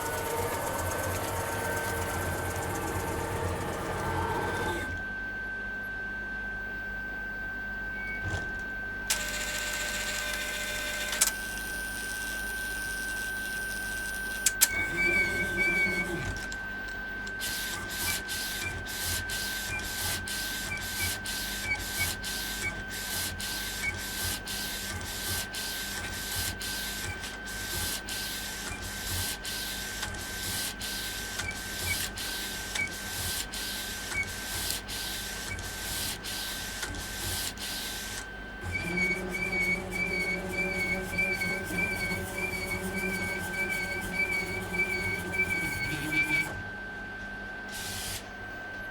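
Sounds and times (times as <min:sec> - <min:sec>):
printer high whine: 0:00.0 - 0:05.2, 0:07.7 - 0:48.6
motor hum with warbling tone: 0:00.0 - 0:05.3, 0:06.9 - 0:46.9
printer carriage swishing: 0:14.7 - 0:16.5, 0:38.6 - 0:46.6.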